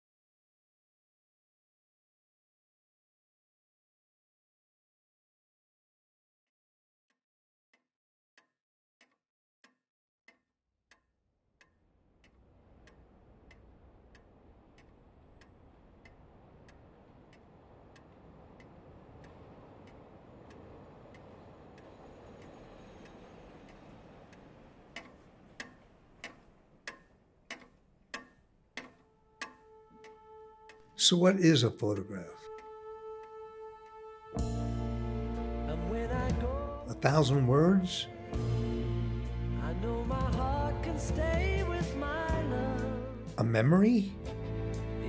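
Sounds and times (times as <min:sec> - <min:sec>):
clock ticking: 0:11.6 - 0:31.2
low rumbling drone: 0:12.4 - 0:26.2, 0:34.4 - 0:37.0, 0:38.0 - 0:43.4.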